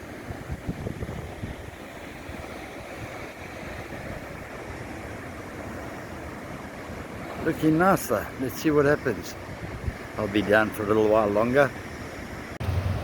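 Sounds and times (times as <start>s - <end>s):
wind buffeting microphone: 0.0s - 7.3s, 8.7s - 10.7s
surf washing on beach: 0.0s - 13.0s.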